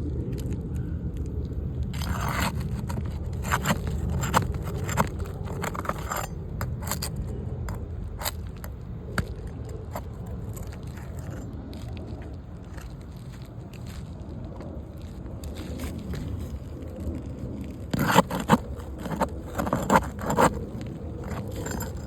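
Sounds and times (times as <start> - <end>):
steady low rumble: 0.0 - 22.0
hand tools scraping shingles: 2.0 - 11.5, 17.6 - 22.0.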